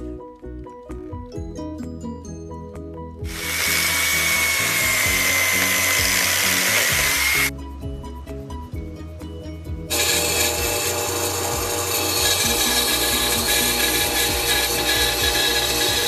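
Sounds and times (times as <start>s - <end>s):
background music with beat: 0.0s - 16.0s
power tool whining: 3.3s - 7.5s, 9.9s - 16.0s.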